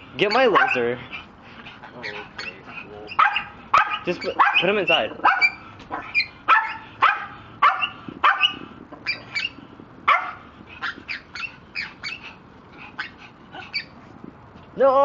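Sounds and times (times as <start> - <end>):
dog barking: 0.3 - 0.9, 3.1 - 12.2.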